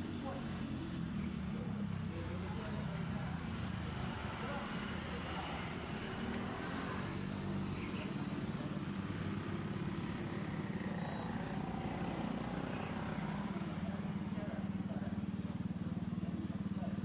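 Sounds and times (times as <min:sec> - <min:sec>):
engine running steadily: 0:07.3 - 0:17.0.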